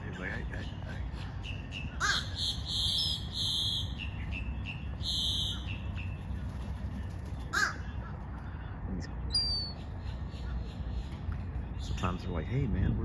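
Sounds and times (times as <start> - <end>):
crows cawing: 1.9 - 3.8, 7.4 - 8.7.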